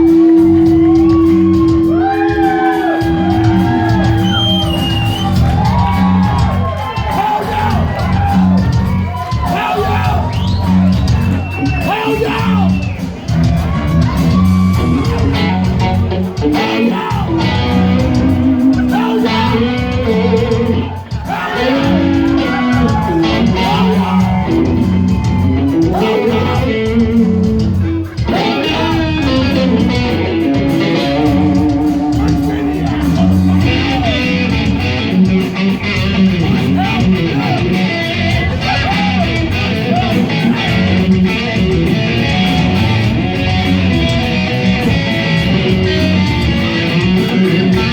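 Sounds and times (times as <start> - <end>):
electric guitar: 0.0 - 47.9
hard rock band playing: 0.0 - 47.9.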